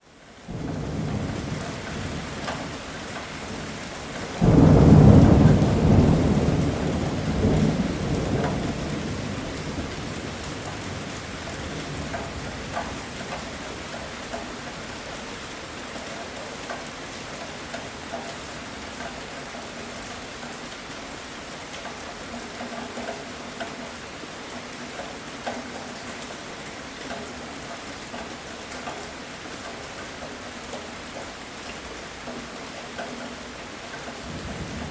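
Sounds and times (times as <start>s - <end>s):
heavy rain: 0.0s - 34.9s
thunder clap rumbling: 3.5s - 13.4s.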